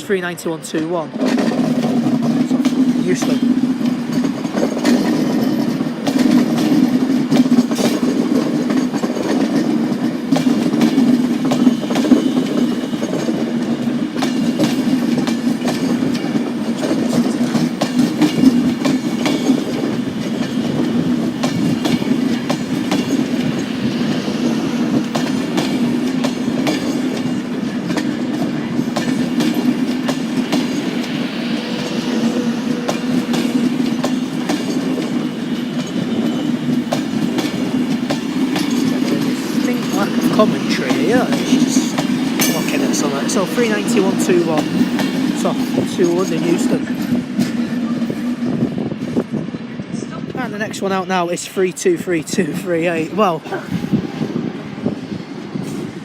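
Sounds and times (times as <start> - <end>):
electric train rumbling: 0.0 - 56.0
wheels clicking over rail joints: 1.1 - 31.2.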